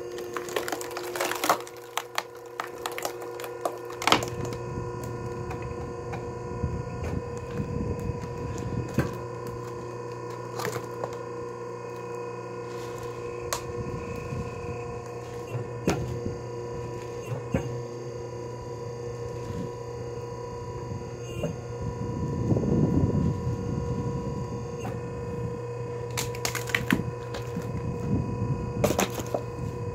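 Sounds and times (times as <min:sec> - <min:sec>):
wood knocking and cracking: 0:00.0 - 0:06.3, 0:07.0 - 0:11.2, 0:12.8 - 0:16.2, 0:26.1 - 0:27.7, 0:28.8 - 0:29.5
log splitter motor humming: 0:00.0 - 0:29.9.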